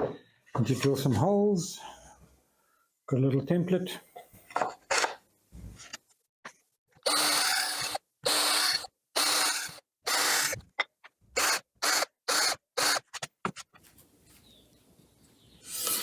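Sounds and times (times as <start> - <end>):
electric drill boring into wood: 7.0 - 10.6, 11.4 - 13.1, 15.7 - 16.0.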